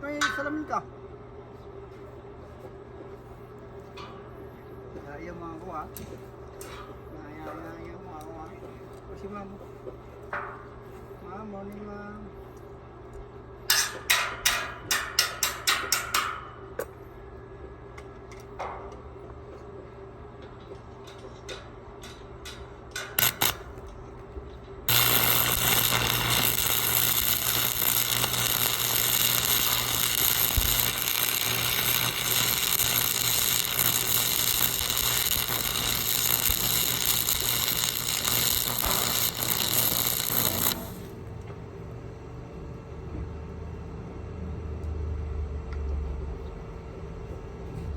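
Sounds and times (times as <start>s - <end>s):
hammer strikes on steel: 13.7s - 16.6s
arc welding hissing crackle: 23.0s - 23.8s, 24.9s - 41.2s.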